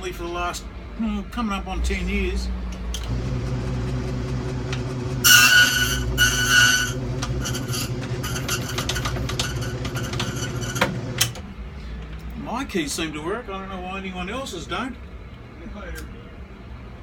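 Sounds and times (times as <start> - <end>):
key-cutting machine motor hum: 3.0 - 11.4.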